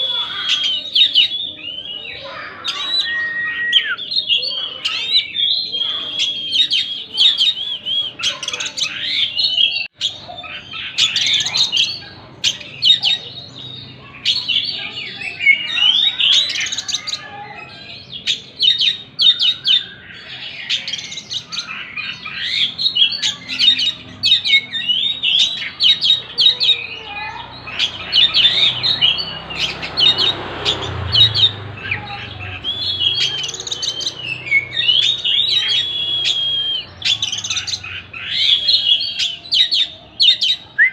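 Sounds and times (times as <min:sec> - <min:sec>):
bird singing whistles and trills: 0:00.0 - 0:17.0, 0:27.7 - 0:40.9.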